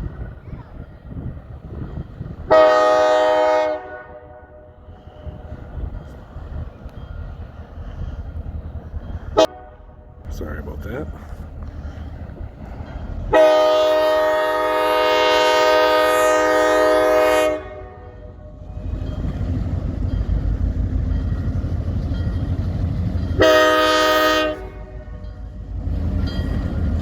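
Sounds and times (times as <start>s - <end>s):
train rumble: 0.0s - 27.0s
locomotive air horn blast: 2.5s - 5.4s, 9.4s - 10.0s, 13.3s - 18.7s, 23.4s - 25.2s.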